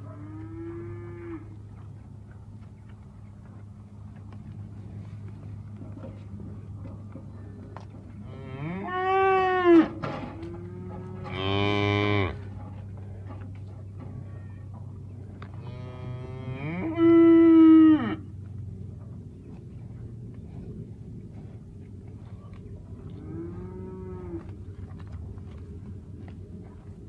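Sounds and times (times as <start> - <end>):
cows mooing: 0.1 - 1.6, 8.2 - 12.5, 15.5 - 18.3, 23.1 - 24.7.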